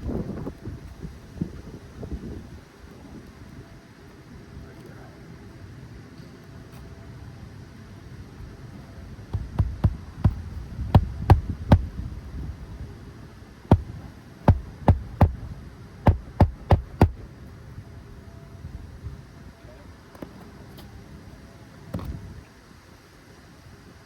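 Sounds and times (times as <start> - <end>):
hammer driving nails into shingle: 9.4 - 11.9, 13.7 - 15.4, 16.1 - 17.2.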